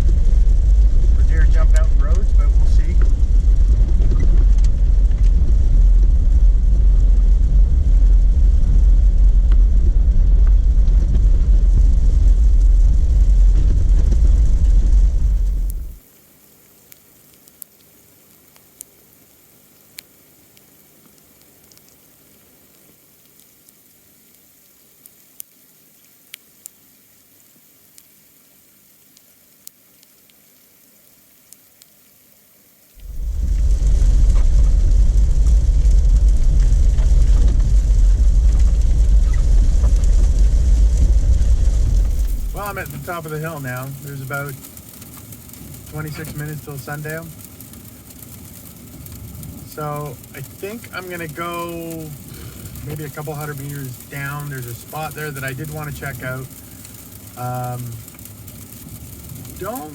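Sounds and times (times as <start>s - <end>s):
vehicle rumbling on dirt road: 0.0s - 16.1s, 33.0s - 59.9s
light ticks: 16.9s - 22.1s, 22.7s - 26.8s, 27.9s - 28.1s, 29.1s - 32.0s, 41.9s - 59.9s.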